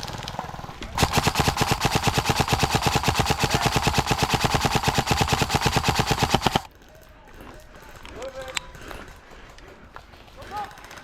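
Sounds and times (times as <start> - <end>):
airsoft rifle full-auto burst: 1.0 - 6.7.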